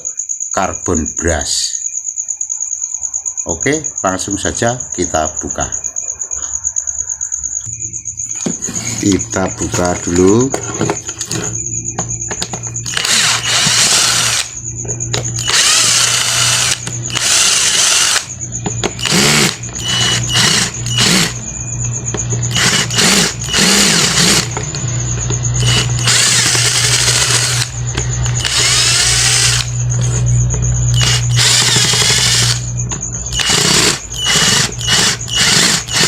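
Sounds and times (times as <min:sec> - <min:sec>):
electric drill spinning: 0:12.4 - 0:14.6, 0:15.2 - 0:21.5, 0:22.2 - 0:24.8, 0:25.4 - 0:30.2, 0:30.9 - 0:32.7, 0:33.3 - 0:36.0.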